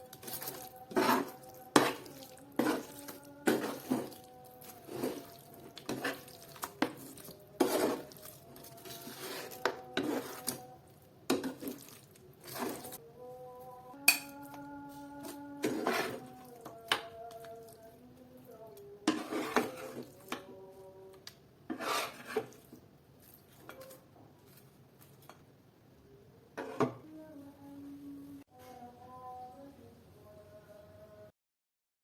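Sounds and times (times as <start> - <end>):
metal utensil scraping a pan: 0.1 - 10.7, 15.6 - 16.4, 19.0 - 20.3, 21.7 - 22.6.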